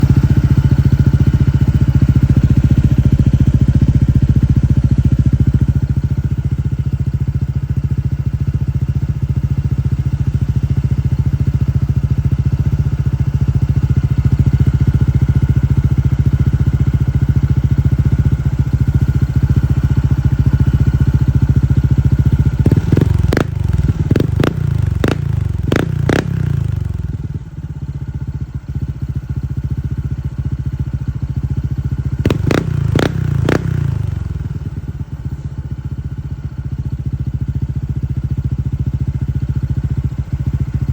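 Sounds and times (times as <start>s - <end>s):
scooter engine idling: 0.0s - 40.9s.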